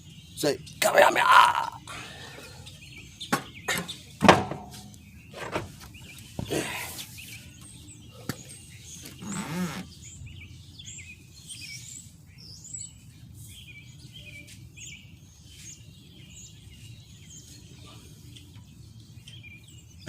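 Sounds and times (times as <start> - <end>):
songbirds chirping: 0.0 - 20.0.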